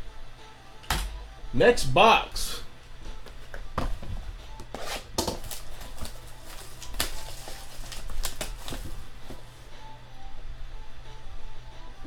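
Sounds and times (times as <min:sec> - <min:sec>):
card boxes and wrappers handled: 0:03.2 - 0:09.7.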